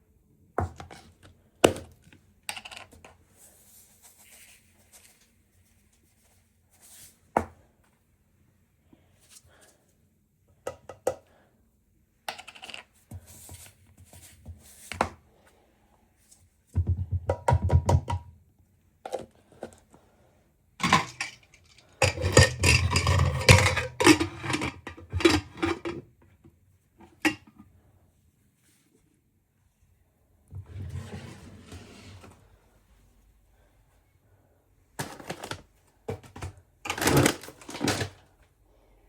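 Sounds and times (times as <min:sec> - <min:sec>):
objects clattering and knocking: 0:20.8 - 0:26.1, 0:35.0 - 0:38.2.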